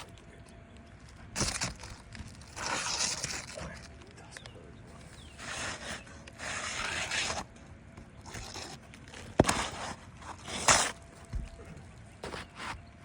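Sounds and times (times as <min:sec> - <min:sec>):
roof shingles scraping: 0:01.3 - 0:03.9, 0:05.0 - 0:07.5, 0:08.2 - 0:12.9.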